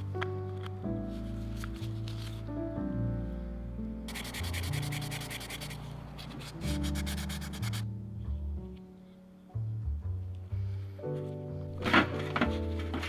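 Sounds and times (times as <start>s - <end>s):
background music: 0.0s - 13.0s
abrasive sanding strokes: 4.1s - 7.8s.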